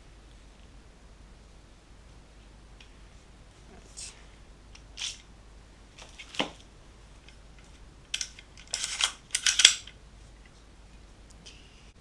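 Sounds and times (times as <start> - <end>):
rifle clicks and rattles: 6.0 - 10.6.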